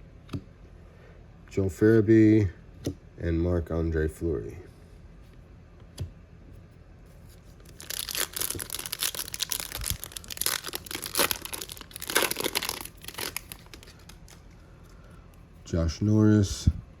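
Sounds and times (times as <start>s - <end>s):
foil wrapper crinkling and tearing: 7.6s - 14.6s.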